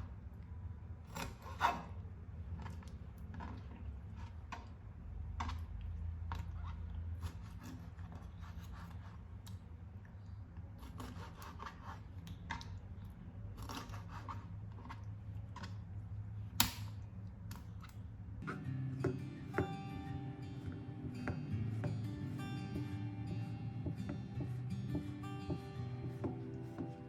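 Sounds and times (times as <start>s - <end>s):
snipping and scraping food: 1.1s - 19.8s
steady low hum: 12.8s - 27.0s.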